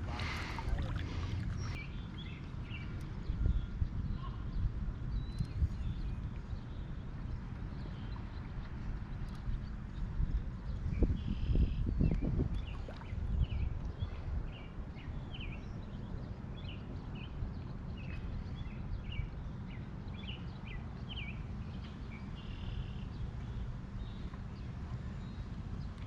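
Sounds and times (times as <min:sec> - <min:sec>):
birds chirping: 0:00.0 - 0:10.1
wind rumble on microphone: 0:00.0 - 0:26.0.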